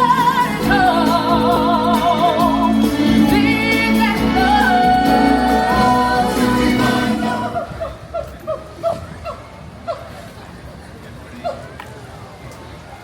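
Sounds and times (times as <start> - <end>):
steady musical accompaniment: 0.0 - 7.6
woman singing with vibrato: 0.0 - 8.1.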